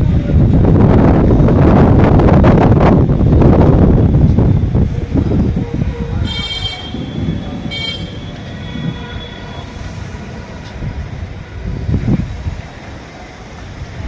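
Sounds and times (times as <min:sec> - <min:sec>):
traffic rumble: 0:00.0 - 0:14.0
wind on microphone: 0:00.0 - 0:14.0
vehicle horn honks: 0:06.2 - 0:09.9.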